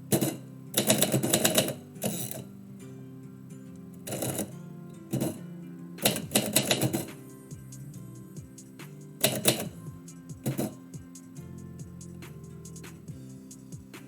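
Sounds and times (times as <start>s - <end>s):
instrumental music: 0.0s - 14.0s
typewriter keys striking: 0.2s - 2.3s, 6.0s - 7.2s, 9.2s - 9.8s.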